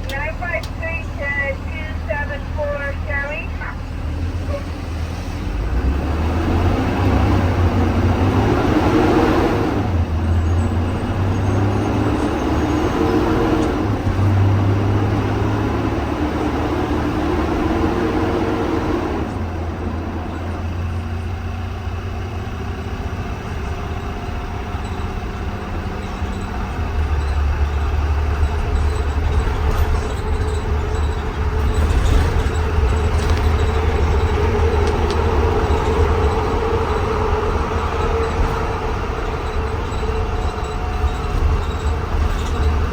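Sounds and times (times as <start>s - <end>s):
bus engine drone: 0.0s - 42.9s
road noise: 0.0s - 42.9s.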